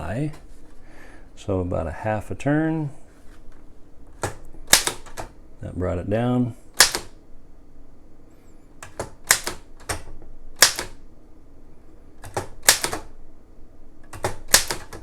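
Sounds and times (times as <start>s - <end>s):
typewriter keys clacking: 4.2s - 5.3s, 8.8s - 11.0s, 12.2s - 13.1s, 14.1s - 15.0s.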